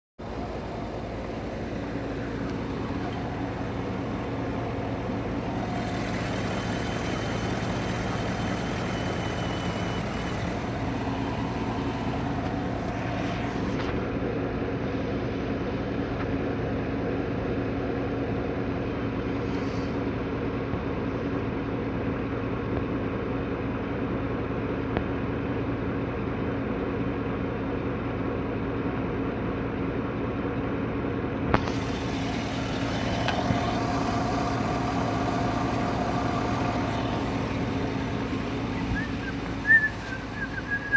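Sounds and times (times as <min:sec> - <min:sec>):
engine idling: 0:00.0 - 0:29.8, 0:31.3 - 0:40.9
high hiss: 0:01.5 - 0:13.9, 0:31.7 - 0:40.9.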